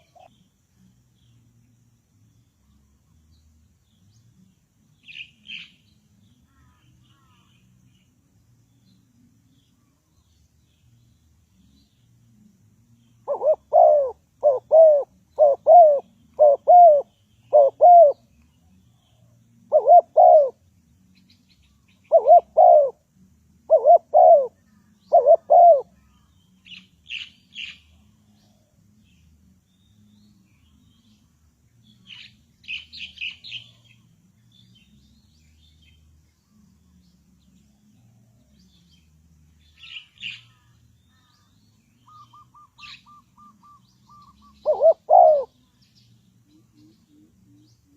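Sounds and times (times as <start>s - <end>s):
dove cooing: 0.0s - 0.3s, 13.2s - 18.2s, 19.7s - 20.6s, 22.1s - 23.0s, 23.7s - 26.0s, 42.1s - 45.6s
small birds chirping: 0.0s - 47.9s.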